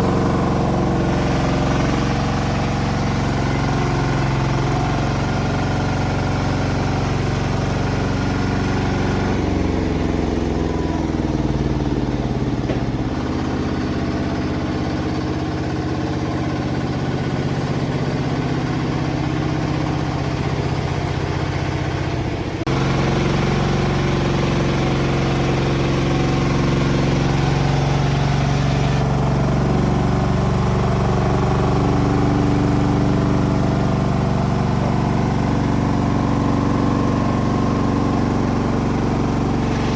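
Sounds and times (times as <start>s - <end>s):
sawmill engine drone: 0.0s - 39.9s
band saw blade cutting log: 26.5s - 29.3s, 39.2s - 39.9s.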